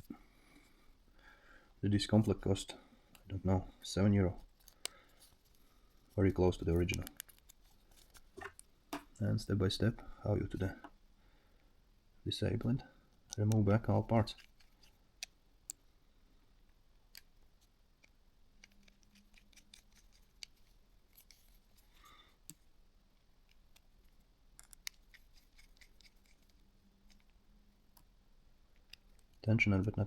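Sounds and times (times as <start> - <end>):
small plastic parts clicking: 6.7 - 8.7, 17.0 - 22.6, 23.4 - 28.1, 28.7 - 29.4.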